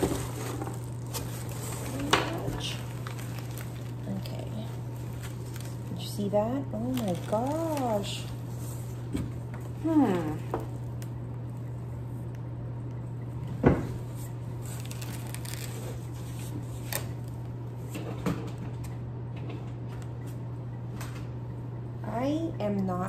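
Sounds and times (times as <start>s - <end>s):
packaging rustling: 0.0s - 6.1s, 6.8s - 8.9s, 14.6s - 17.4s
steady low hum: 0.0s - 23.0s.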